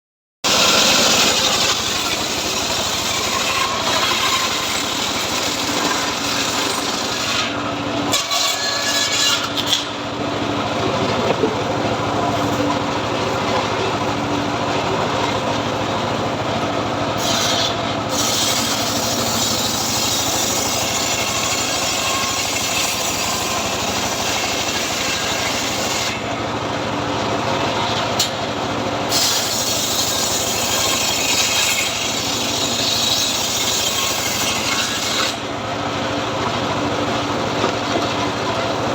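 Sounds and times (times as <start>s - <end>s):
saw rasping through wood: 0.4s - 38.9s
machine drone: 8.8s - 20.6s.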